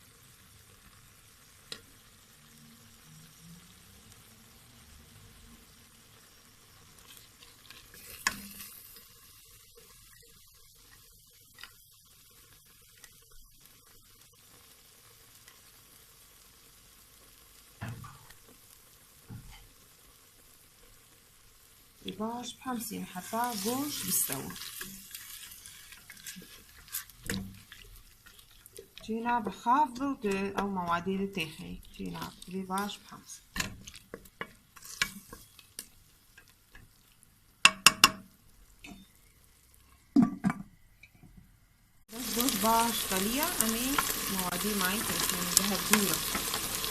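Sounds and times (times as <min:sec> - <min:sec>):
chicken sizzling in oil: 0:00.0 - 0:40.2, 0:42.0 - 0:46.9
food frying: 0:00.0 - 0:40.2, 0:42.1 - 0:46.9
spoon scraping in a pot: 0:07.0 - 0:09.1, 0:23.0 - 0:36.5.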